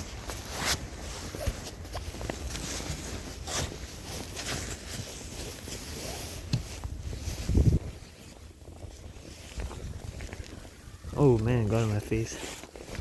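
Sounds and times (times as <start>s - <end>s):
snow brush sweeping snow: 2.4s - 8.4s, 11.8s - 13.0s.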